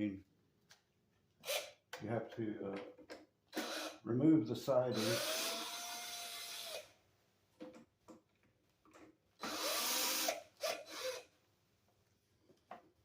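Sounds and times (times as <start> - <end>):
cordless screwdriver whining: 5.0 - 6.8, 9.4 - 11.3.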